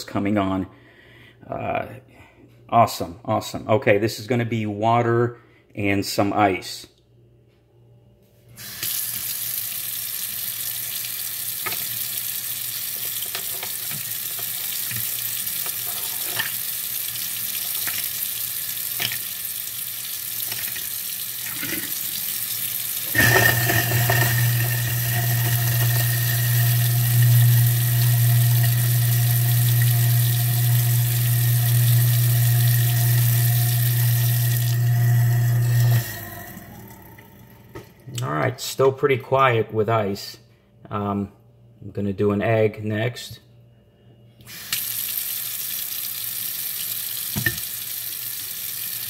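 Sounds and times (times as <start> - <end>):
tap water running into sink: 8.8 - 38.0, 44.7 - 49.0
garbage disposal grinding: 11.6 - 18.2, 20.4 - 38.0.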